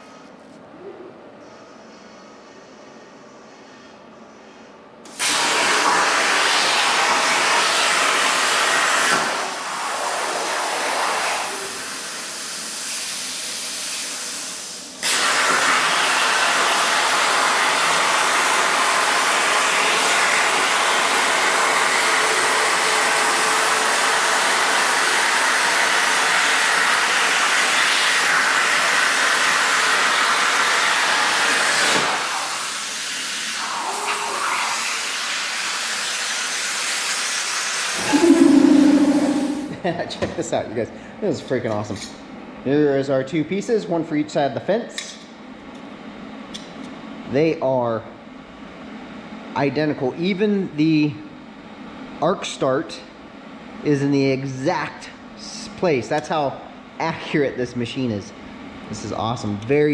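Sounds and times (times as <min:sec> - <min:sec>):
plasma torch cutting steel: 0:05.1 - 0:13.0, 0:13.8 - 0:37.3.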